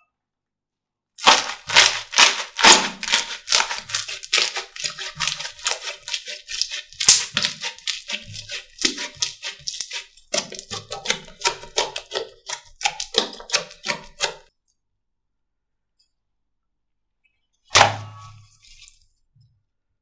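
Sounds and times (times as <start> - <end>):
slime squishing and popping: 1.2 - 14.4
single thud: 17.7 - 18.4.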